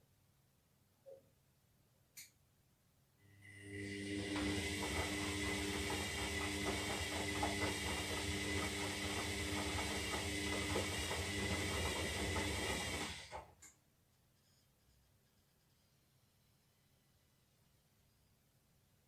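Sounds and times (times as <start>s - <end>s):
washing machine motor humming: 3.4s - 13.6s.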